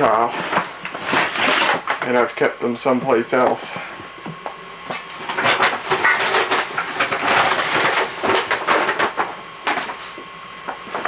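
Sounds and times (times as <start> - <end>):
plastic bags crinkling: 0.0 - 2.1, 5.1 - 11.0.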